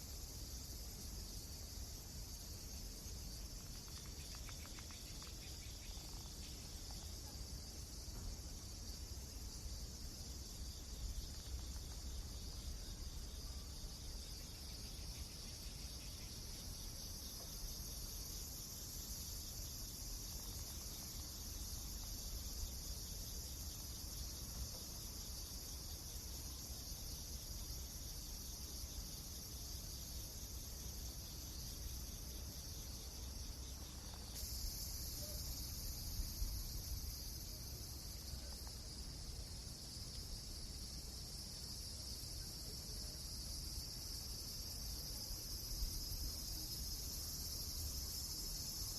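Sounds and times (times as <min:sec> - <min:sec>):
faint ticks: 0:03.5 - 0:07.1.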